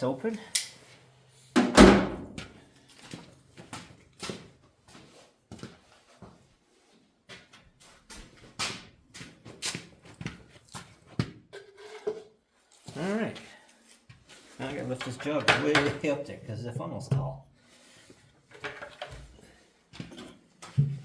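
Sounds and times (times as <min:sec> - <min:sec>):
loud knock: 0:01.6 - 0:02.4.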